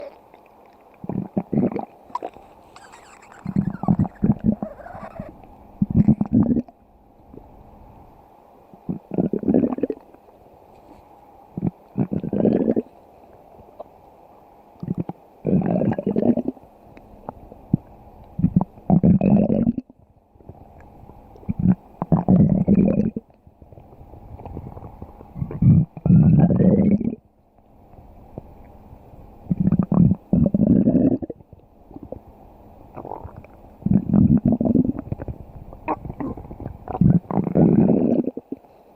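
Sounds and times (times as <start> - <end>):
cartoon stomach growling: 1.0 - 6.7, 14.8 - 16.6, 18.4 - 19.9, 21.5 - 23.2, 25.4 - 27.2, 29.5 - 31.4, 33.0 - 38.6.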